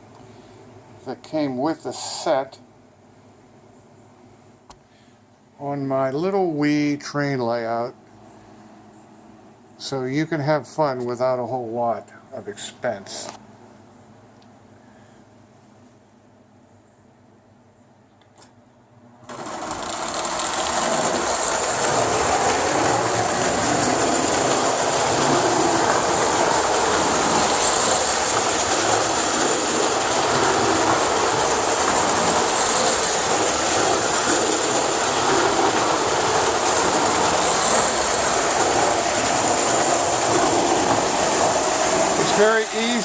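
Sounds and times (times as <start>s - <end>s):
toy train running on track: 19.3s - 43.0s.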